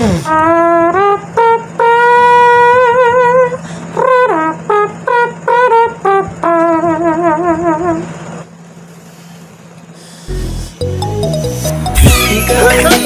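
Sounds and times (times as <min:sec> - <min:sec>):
trumpet-like tune: 0:00.0 - 0:08.5.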